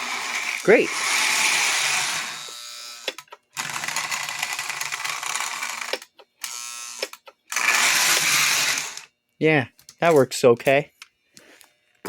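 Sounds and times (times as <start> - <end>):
toy locomotive motor whirring: 0.0 - 9.2
sharp clicks: 3.0 - 3.5, 5.8 - 8.3.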